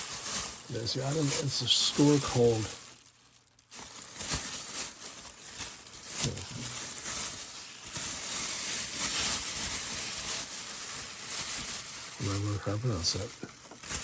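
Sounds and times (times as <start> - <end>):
packaging rustling and crinkling: 0.0 - 14.0.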